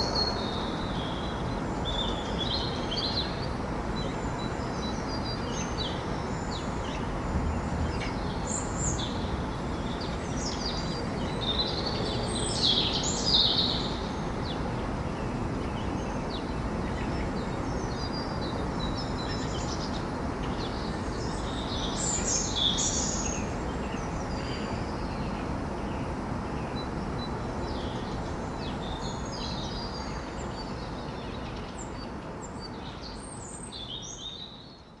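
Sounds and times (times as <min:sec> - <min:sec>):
birds singing and chirping: 0:00.0 - 0:26.0.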